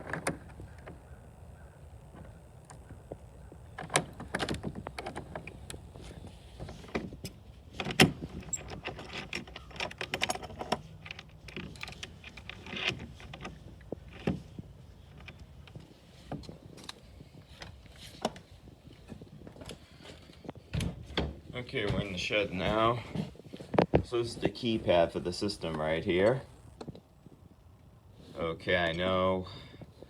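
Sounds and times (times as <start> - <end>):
door being unlocked and opened: 3.8 - 5.7, 7.8 - 14.4.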